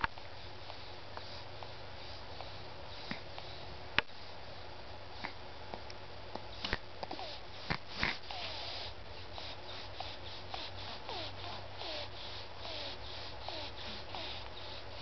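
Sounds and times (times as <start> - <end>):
baby snoring: 6.6 - 15.0.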